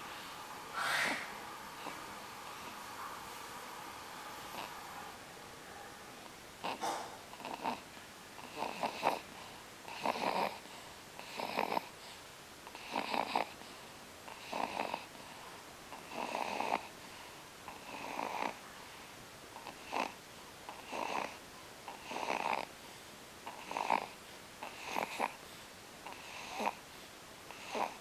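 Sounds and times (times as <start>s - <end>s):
rasping snores: 8.4s - 9.2s, 9.9s - 10.6s, 11.2s - 11.9s, 14.4s - 15.1s, 20.8s - 22.7s, 23.5s - 25.4s, 26.1s - 26.8s, 27.5s - 28.0s.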